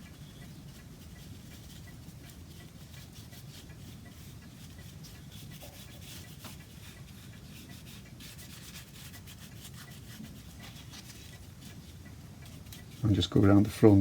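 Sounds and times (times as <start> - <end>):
rubbing strokes on wood: 2.5 - 12.0.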